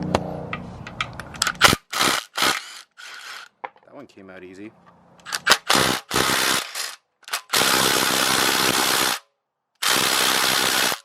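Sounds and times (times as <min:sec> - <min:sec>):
cordless power tool spinning bolts: 0:01.4 - 0:03.5, 0:05.2 - 0:09.2, 0:09.8 - 0:11.0.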